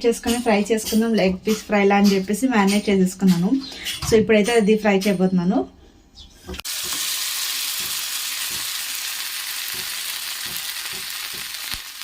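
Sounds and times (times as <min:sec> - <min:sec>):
chicken frying in hot oil: 0:06.6 - 0:12.0.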